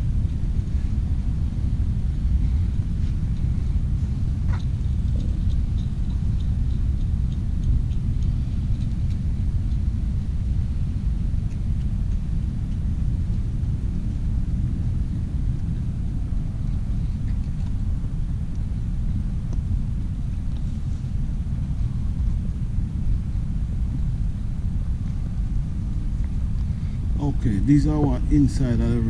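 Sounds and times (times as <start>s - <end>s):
road traffic rumble: 0.0s - 29.0s
faint light ticks: 4.5s - 9.9s, 20.3s - 20.7s.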